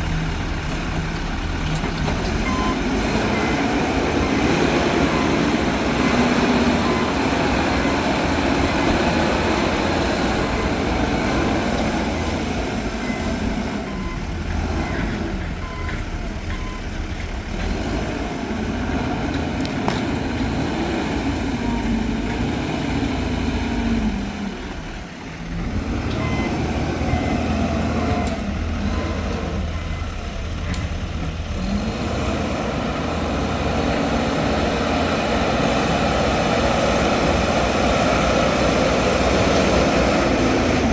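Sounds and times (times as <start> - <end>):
diesel engines revving: 0.0 - 40.9
reversing alarm beeps: 2.4 - 7.5, 12.1 - 16.9, 26.2 - 30.1.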